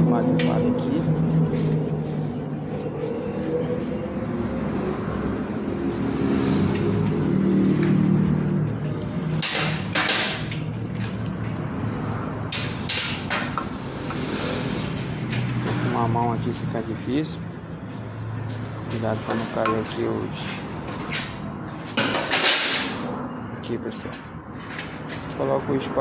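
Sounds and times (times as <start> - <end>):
steady motor drone: 0.0 - 9.0.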